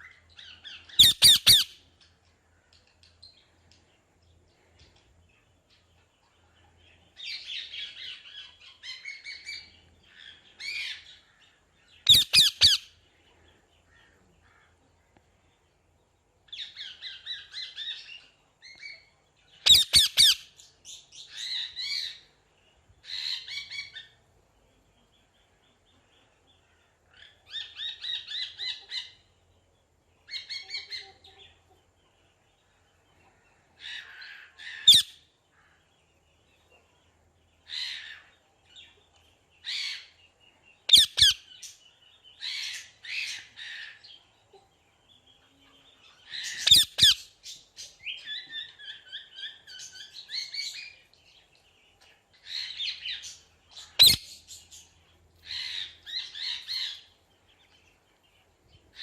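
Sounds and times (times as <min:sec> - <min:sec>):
parrot calling: 0:01.0 - 0:01.8, 0:12.1 - 0:12.9, 0:19.6 - 0:20.5, 0:33.8 - 0:35.2, 0:40.9 - 0:41.4, 0:46.4 - 0:47.3, 0:53.8 - 0:54.4.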